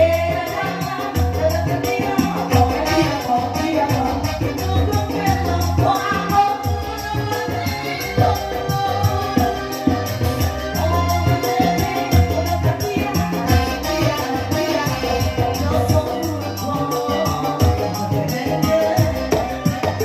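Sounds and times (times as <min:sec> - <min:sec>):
live music through pa system: 0:00.0 - 0:20.0.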